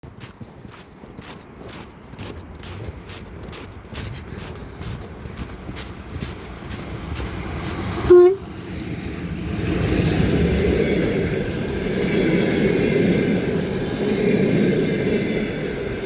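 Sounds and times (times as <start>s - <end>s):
train rumble: 0.0s - 16.0s
train horn blast: 8.0s - 8.6s.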